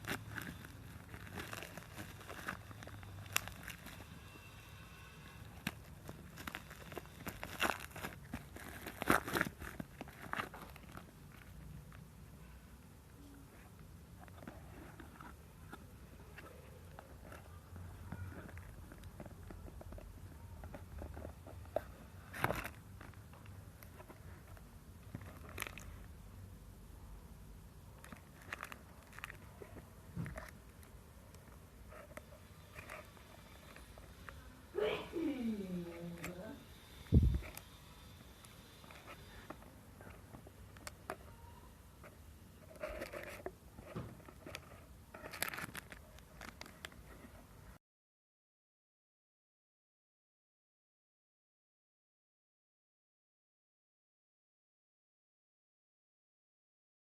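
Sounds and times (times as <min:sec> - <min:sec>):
packaging crinkling: 0:00.0 - 0:04.2, 0:05.5 - 0:11.7, 0:17.2 - 0:26.1, 0:28.0 - 0:31.5, 0:42.7 - 0:47.2.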